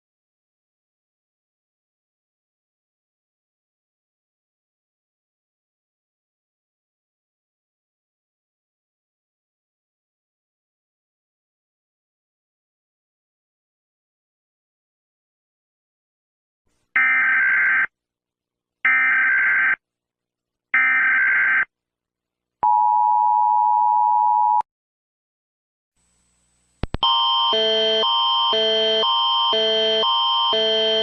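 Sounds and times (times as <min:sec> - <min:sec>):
harsh pulsing electronic alarm: 0:17.0 - 0:17.9, 0:18.9 - 0:19.8, 0:20.8 - 0:21.7, 0:27.0 - 0:31.0.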